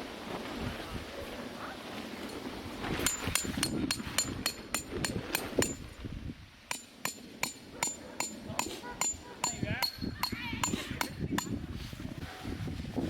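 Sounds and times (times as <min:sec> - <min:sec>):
hammer blows on metal: 0:06.7 - 0:11.6.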